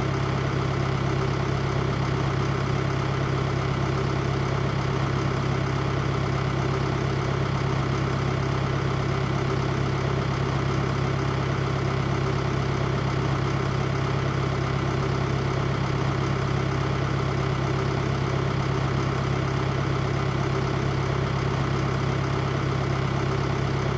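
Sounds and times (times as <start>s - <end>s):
tractor engine running: 17.9s - 23.9s.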